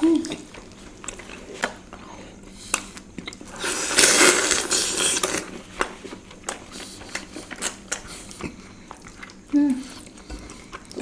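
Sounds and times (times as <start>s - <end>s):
mouth and chewing clicks: 2.7s - 11.0s.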